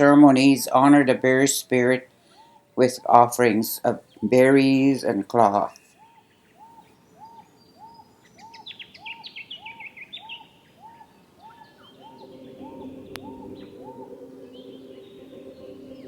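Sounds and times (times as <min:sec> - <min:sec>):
low steady drone: 0:11.4 - 0:16.0.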